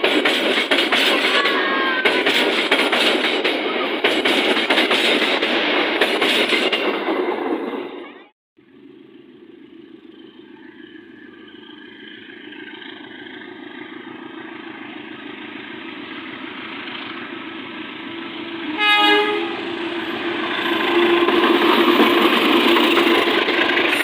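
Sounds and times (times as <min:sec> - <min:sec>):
diesel locomotive rumble: 0:00.0 - 0:24.0
train horn blast: 0:18.5 - 0:22.0.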